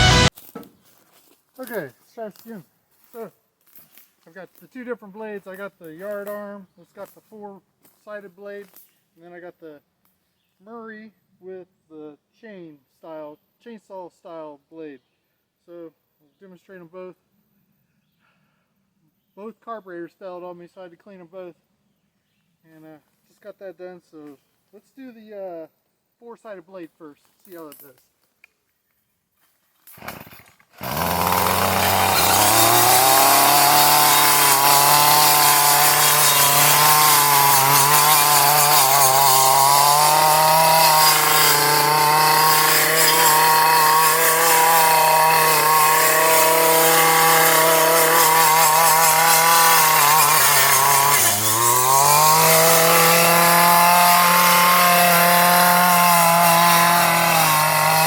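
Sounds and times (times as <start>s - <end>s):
string trimmer engine running: 30.0s - 58.0s.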